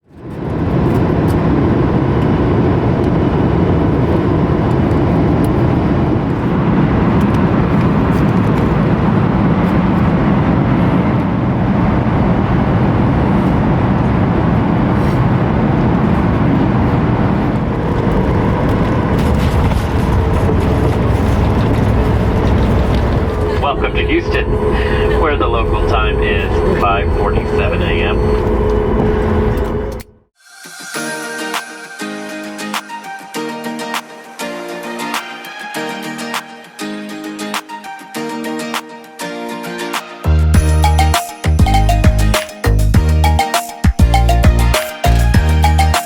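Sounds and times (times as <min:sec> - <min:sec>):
jet engine cabin noise: 0:00.0 - 0:36.8.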